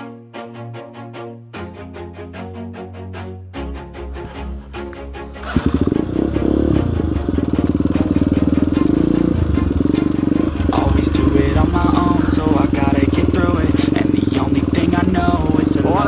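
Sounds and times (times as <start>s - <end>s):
intro music: 2.8s - 16.0s
motorcycle engine revving: 5.4s - 16.0s.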